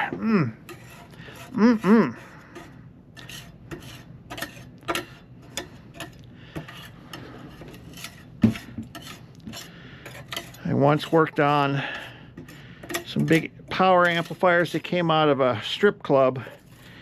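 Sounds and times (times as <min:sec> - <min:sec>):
metallic clicks and scrapes of tools: 0:00.7 - 0:01.6, 0:02.5 - 0:15.0.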